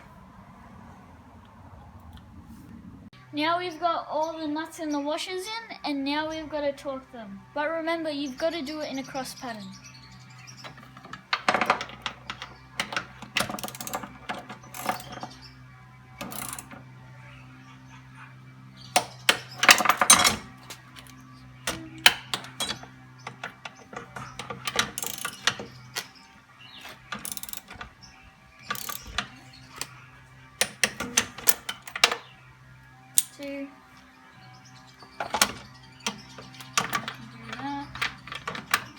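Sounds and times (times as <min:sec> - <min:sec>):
ratchet wrench clicking: 0:10.7 - 0:15.4, 0:16.2 - 0:16.7, 0:21.7 - 0:26.1, 0:26.8 - 0:27.9, 0:28.6 - 0:30.0.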